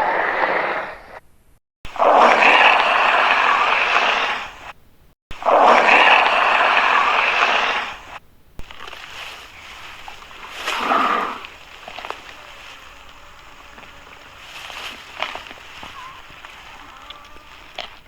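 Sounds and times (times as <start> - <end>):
creature crying: 1.9 - 3.8, 5.4 - 8.0
monster roaring: 1.9 - 4.5, 5.4 - 8.1, 10.7 - 11.5.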